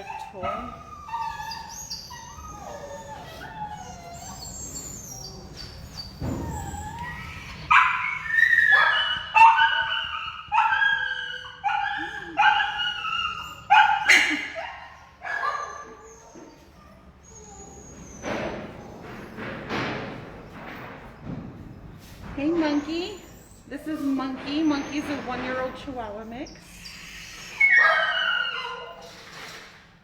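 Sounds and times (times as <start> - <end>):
dogs whining softly: 0.0 - 25.7, 26.4 - 29.8
dog barking high-pitched: 7.7 - 15.9, 27.6 - 28.9.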